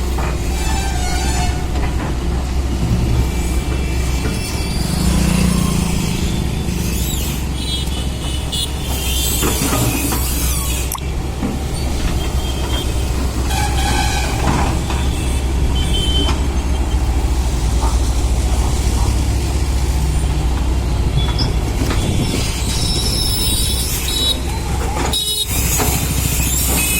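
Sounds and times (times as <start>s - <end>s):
high squeals and hisses: 4.4s - 7.8s, 22.3s - 26.9s.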